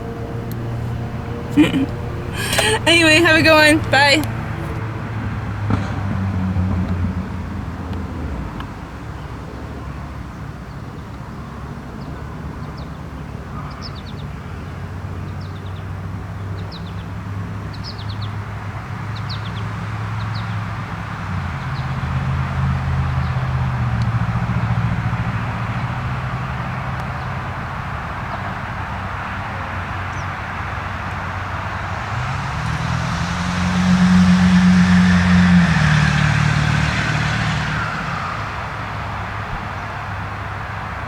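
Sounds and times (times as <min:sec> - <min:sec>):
vehicle engine humming: 0:00.0 - 0:07.6, 0:21.0 - 0:41.0.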